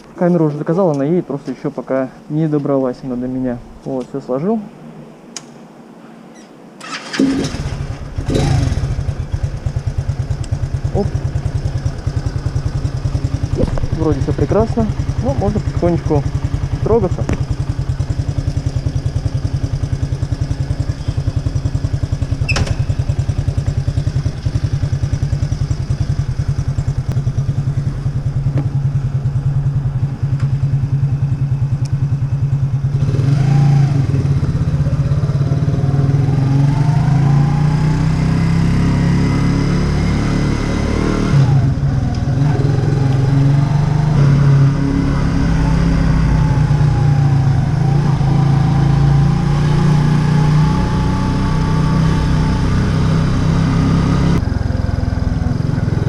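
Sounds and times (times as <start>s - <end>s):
moped engine idling and revving: 6.8s - 56.0s.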